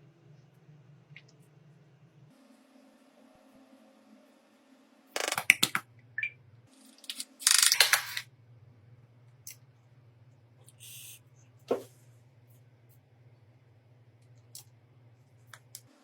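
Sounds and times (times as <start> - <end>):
small hard parts clicking and clattering: 6.9 - 8.2.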